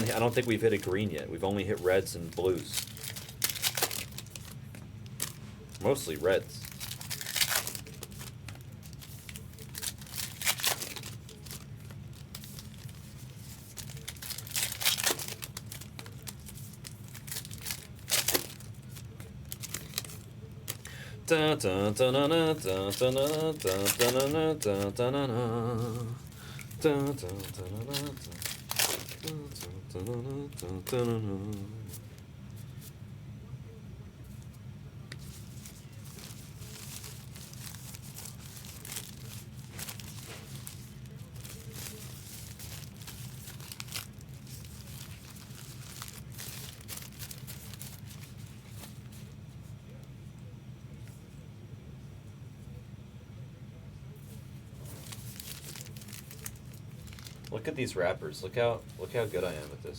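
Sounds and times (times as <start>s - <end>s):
foil wrappers crinkling and tearing: 0.0s - 32.9s, 35.1s - 50.1s, 54.7s - 59.9s
steady low hum: 0.0s - 59.9s.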